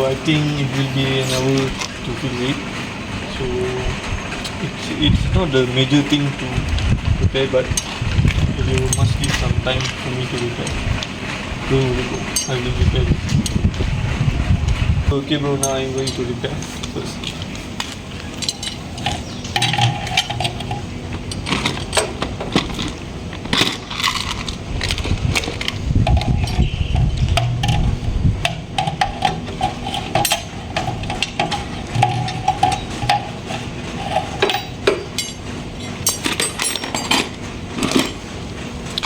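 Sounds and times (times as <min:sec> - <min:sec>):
metal tools clinking: 0:00.0 - 0:02.0, 0:11.8 - 0:13.7, 0:15.4 - 0:38.3
steady whirring tone: 0:00.0 - 0:39.0.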